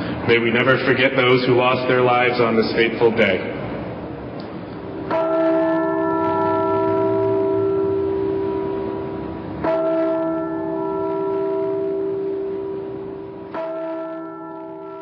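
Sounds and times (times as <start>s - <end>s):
large bell tolling: 4.6s - 15.0s.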